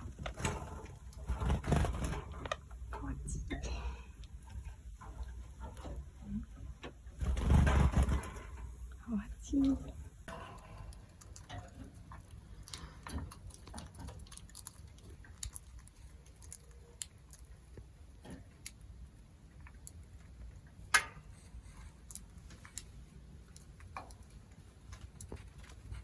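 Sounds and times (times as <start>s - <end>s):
birds pecking with light taps: 9.6s - 26.0s.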